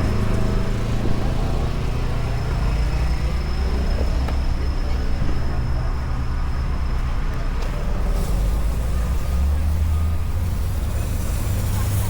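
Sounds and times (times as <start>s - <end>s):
rumble of motor vehicles: 0.0s - 12.0s.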